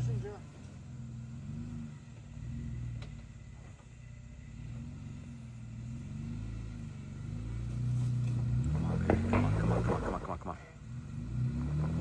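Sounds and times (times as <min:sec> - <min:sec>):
car engine running at low revs: 0:00.0 - 0:12.0.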